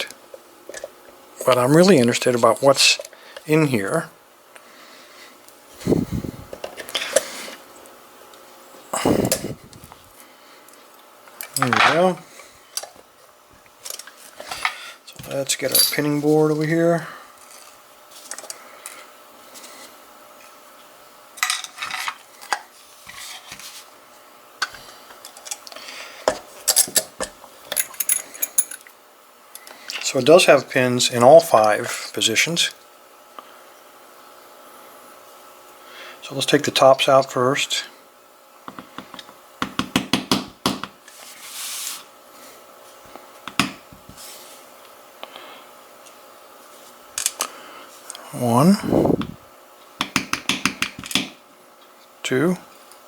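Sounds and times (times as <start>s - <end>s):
small metal clicks and clinks: 27.7s - 28.9s.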